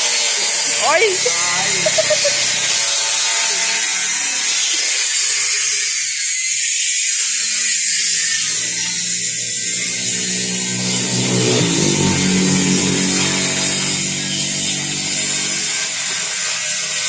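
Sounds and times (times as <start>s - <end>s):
grass chopper machine running: 0.7s - 4.4s, 7.4s - 17.0s.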